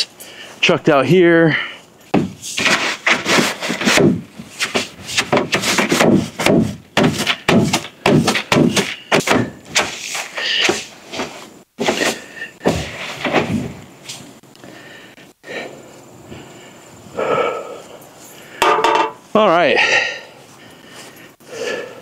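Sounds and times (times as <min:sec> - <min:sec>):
broom sweeping plastic floor: 0:02.2 - 0:14.4.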